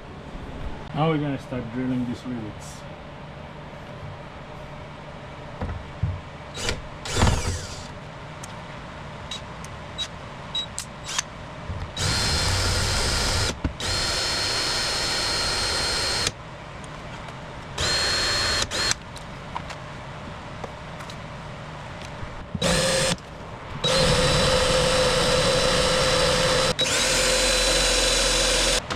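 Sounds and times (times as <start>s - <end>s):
power drill whining: 6.5s - 7.9s, 12.0s - 16.3s, 17.8s - 19.0s, 22.6s - 23.2s, 23.8s - 28.9s.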